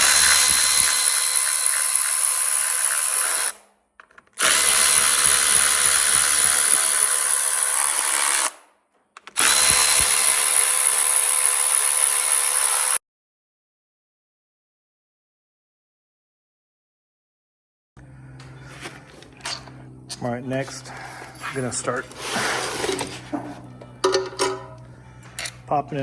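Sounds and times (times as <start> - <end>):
cordless drill whining: 0.0 - 3.6, 4.4 - 8.6, 9.2 - 13.0.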